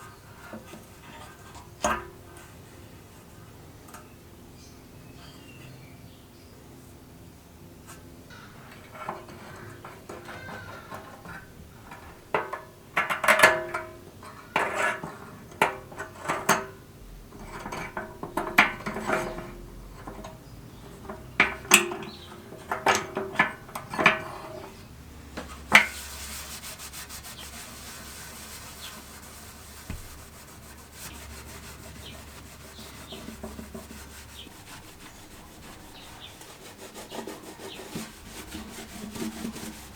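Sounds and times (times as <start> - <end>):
scraping and rubbing on metal: 0.0 - 2.7, 7.8 - 39.9
steady hiss: 25.7 - 39.9.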